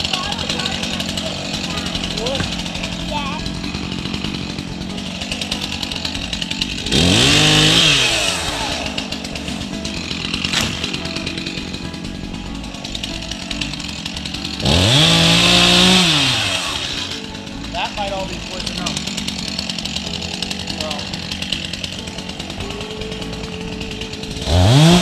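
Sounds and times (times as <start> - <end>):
small engine revving: 0.0 - 25.0.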